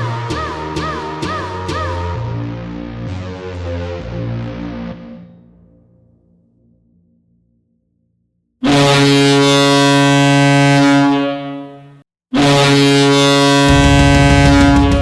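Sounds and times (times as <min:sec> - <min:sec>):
hockey goal horn blasts: 0:08.6 - 0:15.0
drum-heavy music with strong bass: 0:13.7 - 0:15.0.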